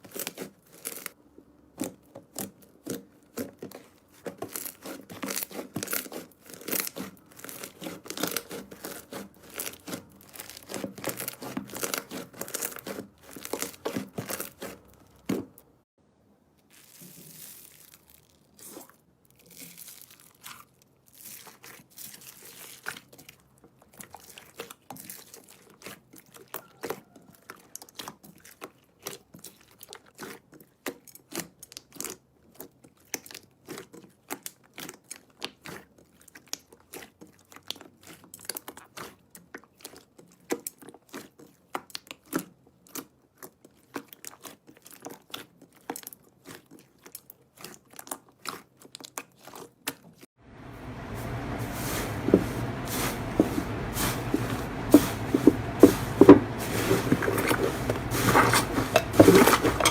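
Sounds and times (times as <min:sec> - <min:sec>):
slime crackling and popping: 0:03.8 - 0:14.7.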